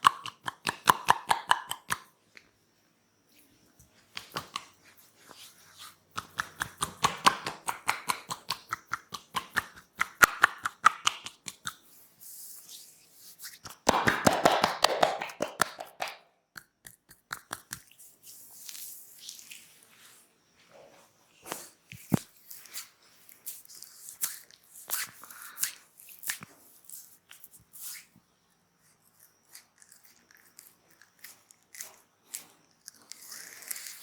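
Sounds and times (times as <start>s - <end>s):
hands slapping on body: 6.2s - 11.8s, 13.6s - 17.9s.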